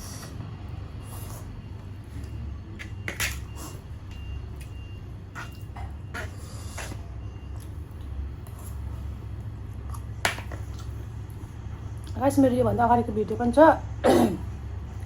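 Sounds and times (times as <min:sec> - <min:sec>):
chewing with lip smacks: 0:01.1 - 0:12.2.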